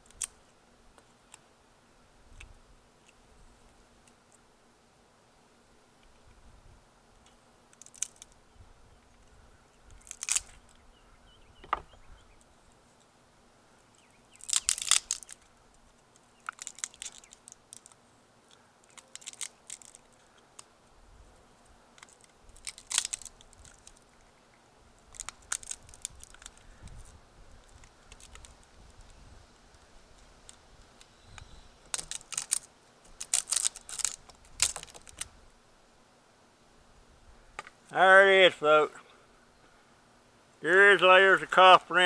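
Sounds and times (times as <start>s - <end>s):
crunching and tearing of component: 7.8s - 8.4s, 9.9s - 10.8s, 14.3s - 15.5s, 16.1s - 18.0s, 18.8s - 20.7s, 22.0s - 24.2s, 25.1s - 29.1s, 30.1s - 35.3s.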